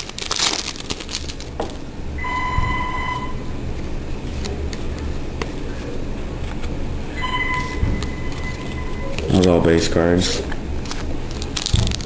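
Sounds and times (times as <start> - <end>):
constant low hum: 0.0 - 12.0
electronic tone: 2.2 - 3.5, 7.1 - 9.3.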